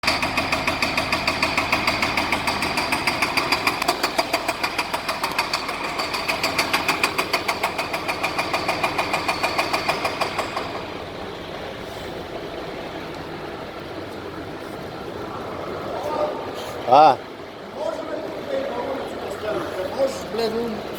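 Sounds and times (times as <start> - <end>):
diesel engine knocking: 0.0 - 15.4
quiet steady engine sound: 0.0 - 20.9.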